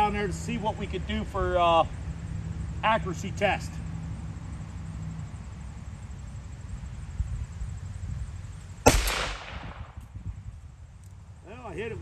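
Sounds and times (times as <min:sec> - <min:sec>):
pistol shot with echo: 0:08.9 - 0:10.1.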